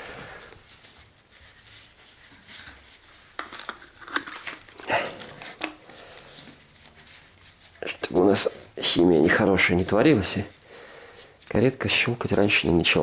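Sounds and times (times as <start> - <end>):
tissue paper rustling: 0.0 - 3.4, 4.4 - 10.6
paper scraping and crinkling: 0.0 - 10.6.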